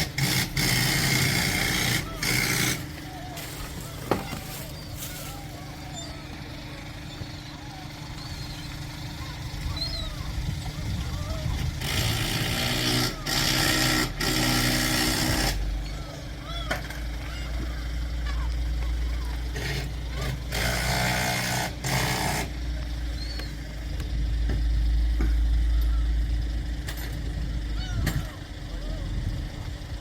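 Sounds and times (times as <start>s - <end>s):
seagulls calling: 0.0s - 22.0s, 22.6s - 26.5s, 27.2s - 30.0s.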